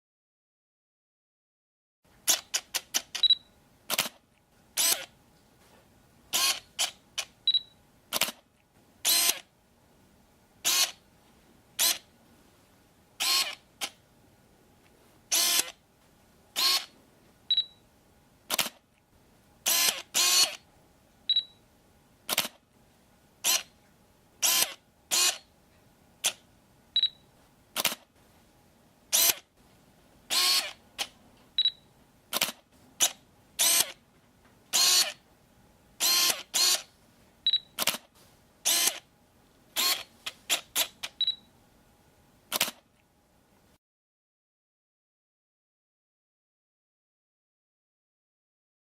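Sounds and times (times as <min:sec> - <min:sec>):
camera shutter clicks: 0:02.3 - 0:04.2, 0:04.8 - 0:05.1, 0:08.1 - 0:08.4, 0:09.1 - 0:09.5, 0:10.6 - 0:11.0, 0:11.8 - 0:12.0, 0:13.2 - 0:14.0, 0:15.3 - 0:15.8, 0:16.6 - 0:16.9, 0:18.5 - 0:18.8, 0:19.7 - 0:20.6, 0:22.3 - 0:22.6, 0:23.4 - 0:23.7, 0:24.4 - 0:25.4, 0:27.8 - 0:28.1, 0:29.1 - 0:29.4, 0:30.3 - 0:31.2, 0:32.3 - 0:34.0, 0:34.8 - 0:35.2, 0:36.0 - 0:36.9, 0:37.8 - 0:38.1, 0:38.7 - 0:39.0, 0:39.8 - 0:41.2, 0:42.5 - 0:42.8
high focus beep: 0:03.2 - 0:03.6, 0:07.5 - 0:07.8, 0:17.5 - 0:17.8, 0:21.3 - 0:21.6, 0:27.0 - 0:27.3, 0:31.6 - 0:31.9, 0:37.5 - 0:37.8, 0:41.2 - 0:41.5.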